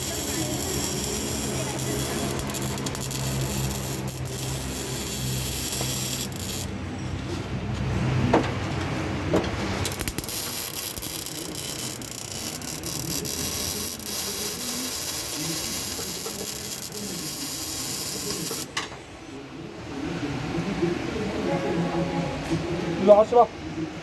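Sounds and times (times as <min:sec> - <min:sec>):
welder crackling hiss: 0:00.0 - 0:06.7, 0:09.8 - 0:18.7.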